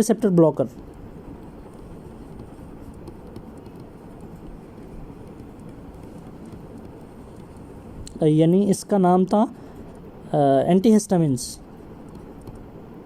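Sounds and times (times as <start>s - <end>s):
low background noise: 0.0s - 13.0s
pen scratching while writing: 0.7s - 8.0s.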